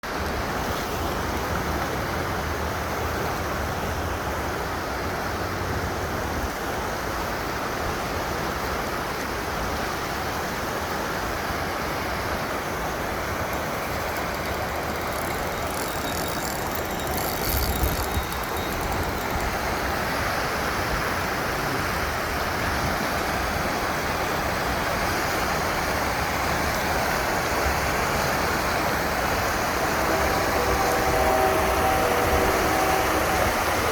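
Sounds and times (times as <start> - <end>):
river water rushing: 0.1 - 33.9.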